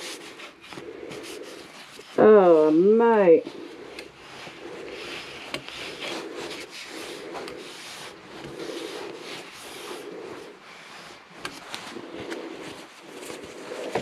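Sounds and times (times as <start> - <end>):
rubbing strokes on wood: 3.4 - 14.0.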